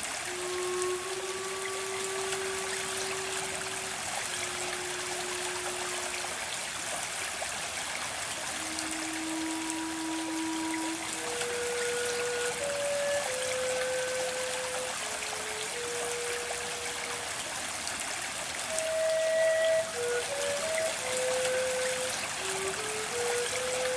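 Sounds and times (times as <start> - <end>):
rushing water: 0.0 - 23.9
soft background music: 8.7 - 17.3.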